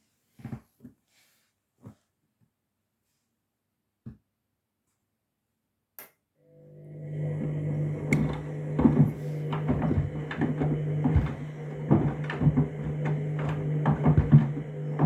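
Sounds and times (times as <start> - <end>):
washing machine drum motor humming: 6.6 - 15.0.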